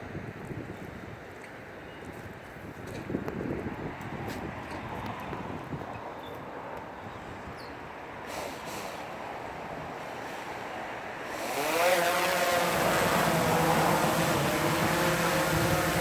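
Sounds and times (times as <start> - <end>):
drone propellers whining: 11.2 - 16.0.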